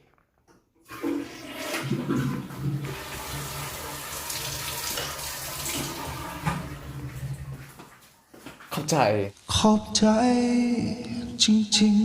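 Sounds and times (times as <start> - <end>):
water tap running: 0.9 - 8.0.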